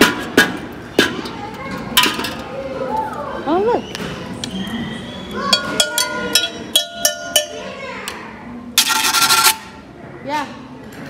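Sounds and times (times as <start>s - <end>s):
sharp knocks and clinks: 5.5s - 7.8s.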